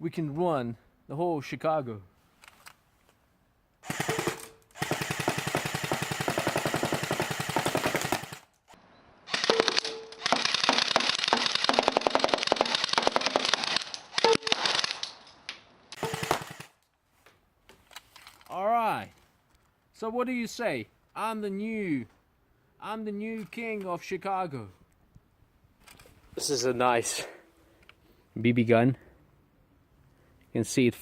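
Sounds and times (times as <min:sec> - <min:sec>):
airsoft gun firing full auto: 0:03.8 - 0:08.5, 0:09.3 - 0:15.0, 0:16.0 - 0:16.8.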